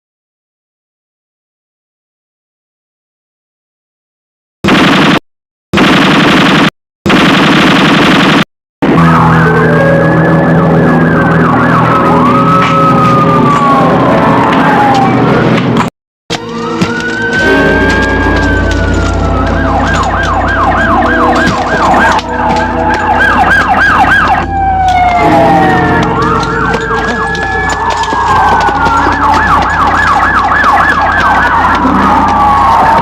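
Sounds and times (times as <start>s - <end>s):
emergency siren wailing and yelping: 8.8s - 15.6s, 16.4s - 33.0s.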